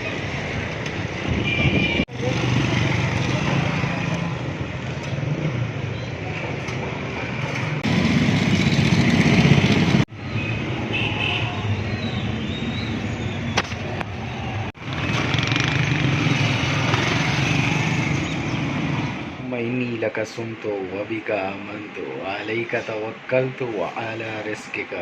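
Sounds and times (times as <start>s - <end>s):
cars passing: 0.0s - 19.5s
motorcycles passing: 0.0s - 19.5s.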